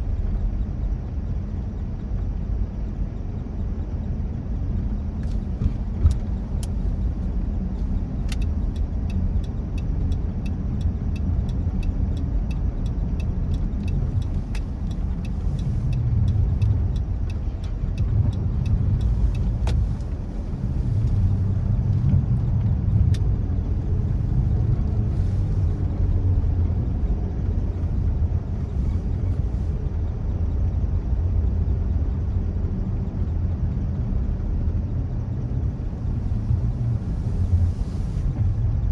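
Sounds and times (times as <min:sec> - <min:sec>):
car driving rumble: 0:00.0 - 0:38.9
regular ticking: 0:08.0 - 0:21.5.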